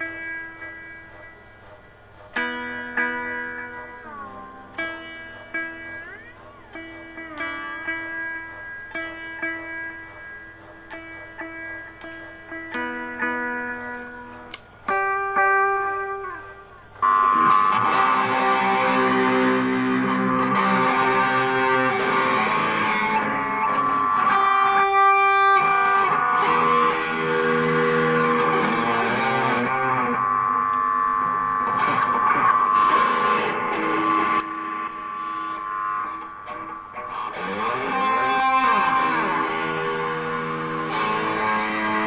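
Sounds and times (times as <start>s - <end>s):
electric guitar through effects pedal: 0.0s - 42.0s.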